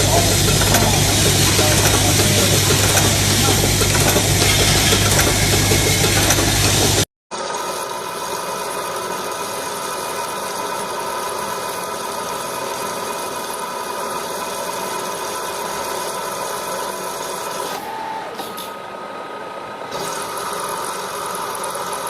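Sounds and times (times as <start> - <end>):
high steady whining tones: 0.0 - 7.1
industrial machine humming: 0.0 - 22.0.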